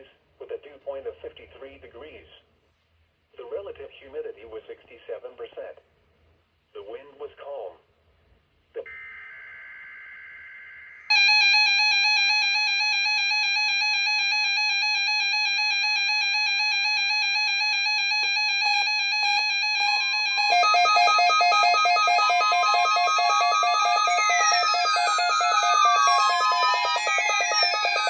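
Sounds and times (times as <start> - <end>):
steady electronic alarm tone: 8.9 - 28.0
rapidly pulsing electronic tone: 18.5 - 28.0.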